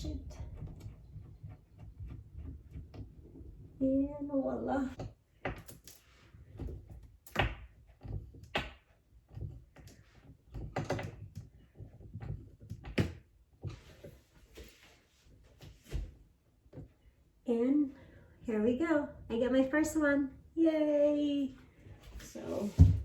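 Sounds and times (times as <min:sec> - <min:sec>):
soft rustling: 0:13.6 - 0:17.2, 0:21.4 - 0:23.0.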